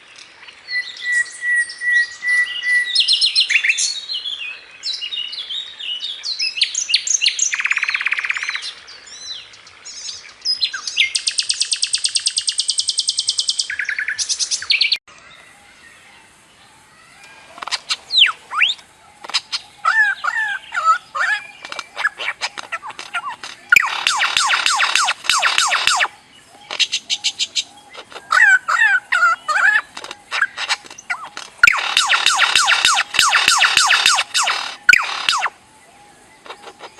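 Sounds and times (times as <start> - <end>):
songbirds singing: 0.0 - 36.9
high bird trill: 17.0 - 35.7.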